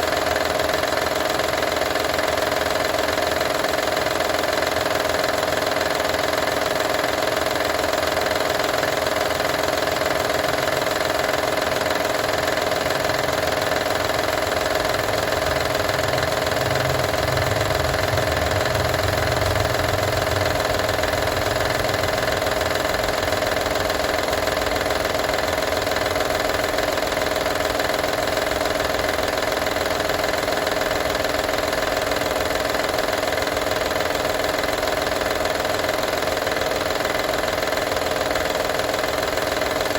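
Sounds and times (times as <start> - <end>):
engine rattle: 0.0 - 39.9
car engine humming: 13.1 - 26.3.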